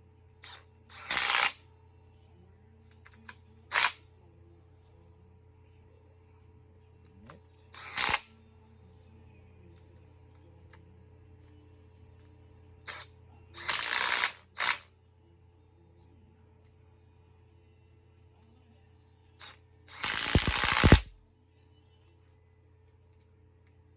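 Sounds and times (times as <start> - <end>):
socket ratchet clicking: 0.5 - 1.6, 3.1 - 4.0, 7.8 - 8.3, 13.6 - 14.8, 19.9 - 21.1.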